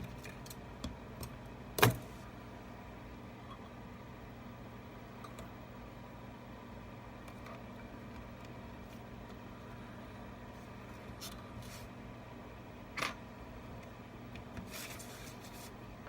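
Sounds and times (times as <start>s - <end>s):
steady electrical hum: 0.0s - 16.0s
rustles and scrapes: 10.8s - 12.0s, 14.6s - 15.8s.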